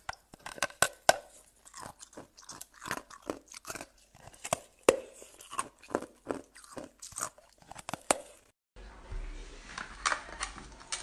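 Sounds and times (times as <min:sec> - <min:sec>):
ice crunched and chewed: 0:00.0 - 0:08.6.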